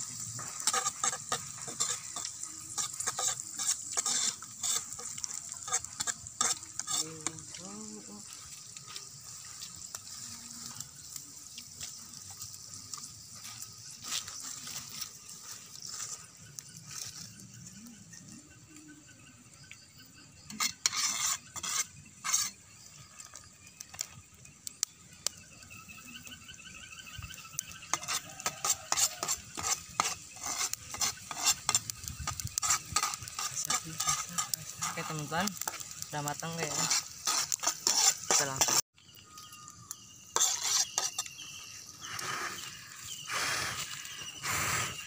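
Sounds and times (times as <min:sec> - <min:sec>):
spatula scraping a pan: 0:00.0 - 0:11.2, 0:20.4 - 0:23.3, 0:27.6 - 0:38.8, 0:40.2 - 0:45.0
food sizzling in oil: 0:00.0 - 0:19.1, 0:19.8 - 0:45.0.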